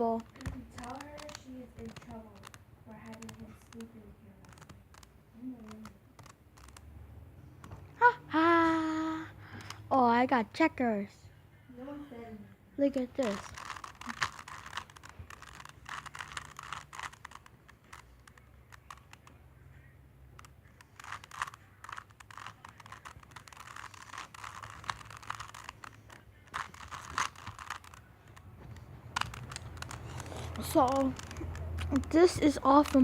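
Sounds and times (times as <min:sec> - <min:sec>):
puzzle cube clicking as twisted: 0:00.0 - 0:06.9, 0:09.6 - 0:09.8, 0:12.8 - 0:19.4, 0:20.3 - 0:33.0.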